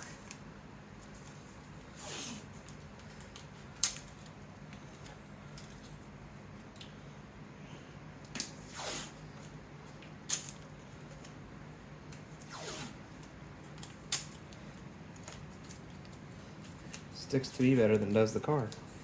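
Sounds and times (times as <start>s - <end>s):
faint steady hum: 0.0s - 19.0s
tape ripping off roll: 8.4s - 9.2s, 12.4s - 13.0s.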